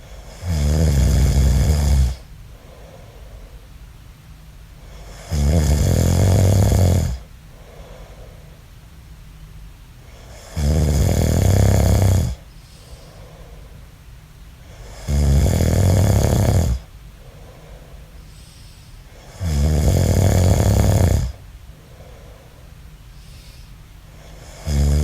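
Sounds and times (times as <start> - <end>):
man snoring: 0.1 - 2.3, 4.9 - 7.3, 10.2 - 13.2, 14.8 - 16.9, 19.2 - 21.4, 24.2 - 25.0.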